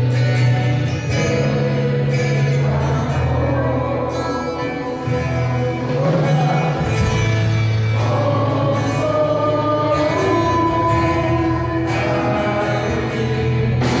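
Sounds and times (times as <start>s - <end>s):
gospel choir singing: 0.0s - 14.0s.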